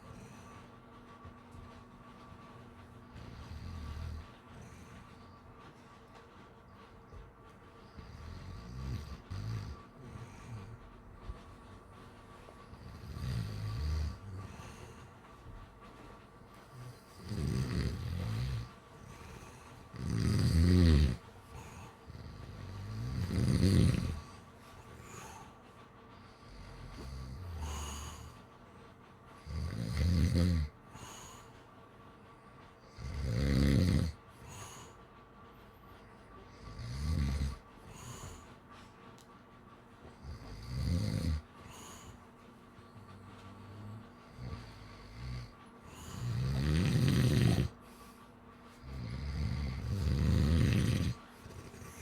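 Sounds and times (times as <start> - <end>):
soft breathing: 0.0 - 29.8, 34.0 - 52.0
person snoring: 20.0 - 21.2, 22.7 - 24.2, 46.2 - 47.8.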